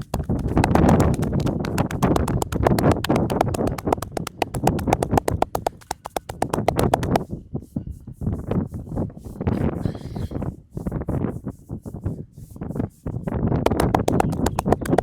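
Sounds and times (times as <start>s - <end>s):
hands tapping on head: 0.0s - 7.2s, 13.7s - 15.0s.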